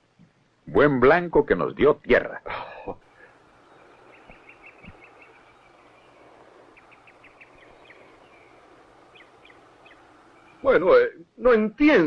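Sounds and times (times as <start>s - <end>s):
birds chirping: 3.0s - 11.6s
soft low thuds: 3.2s - 10.0s.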